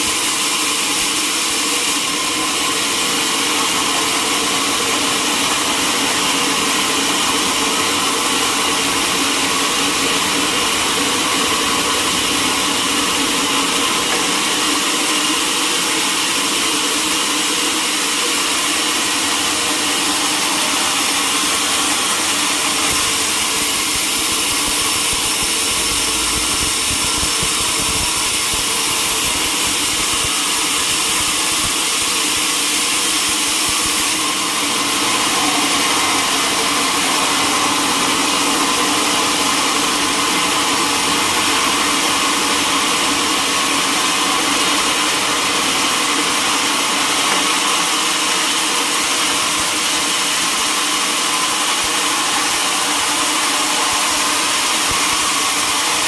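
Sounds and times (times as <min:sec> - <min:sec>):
sawmill machinery din: 0:00.0 - 0:56.0
steady machine tones: 0:02.9 - 0:56.0
high hiss: 0:03.4 - 0:43.2.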